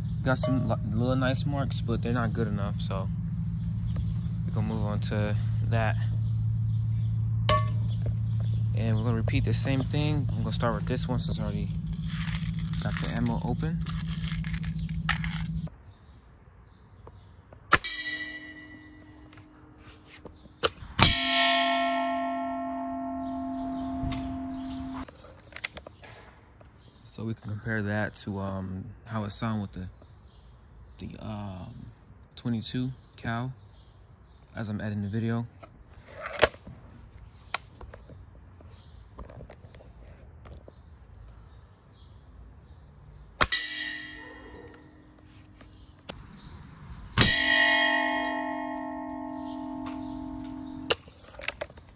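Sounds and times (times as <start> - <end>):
pellets ringing metal pot: 0.4 - 0.9
metal pan ringing: 0.4 - 1.0, 7.5 - 8.0, 17.8 - 19.9, 21.0 - 25.0, 43.5 - 45.2, 47.2 - 51.0.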